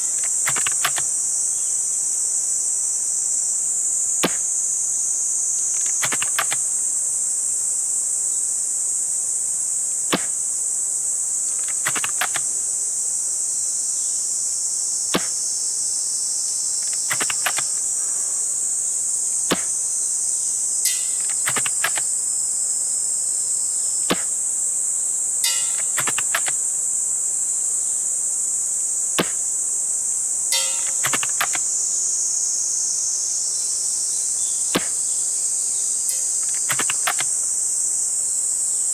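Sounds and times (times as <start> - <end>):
airsoft rifle shot: 0.0 - 1.2, 4.2 - 4.6, 5.7 - 6.8, 10.1 - 10.5, 11.6 - 12.7, 15.1 - 15.5, 16.8 - 17.9, 19.4 - 19.9, 20.9 - 22.2, 24.1 - 24.4, 25.4 - 26.7, 29.2 - 29.6, 30.5 - 31.7, 34.7 - 35.1, 36.1 - 37.5
crickets chirping: 0.0 - 38.9
rifle bolt clicking: 0.1 - 1.2, 5.7 - 6.7, 11.6 - 12.6, 16.8 - 17.9, 20.9 - 22.2, 25.5 - 26.6, 30.6 - 31.7, 36.1 - 37.4.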